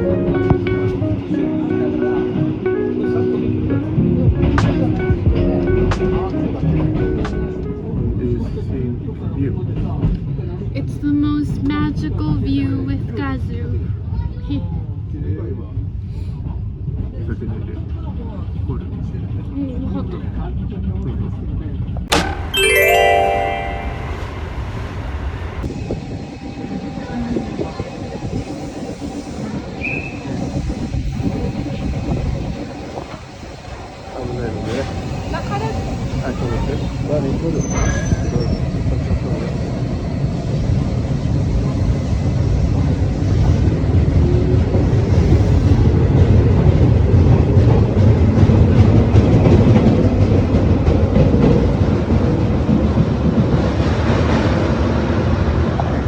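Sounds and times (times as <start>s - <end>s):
chime-like ringing: 22.1s - 25.5s
train running with low rumble: 24.2s - 56.0s.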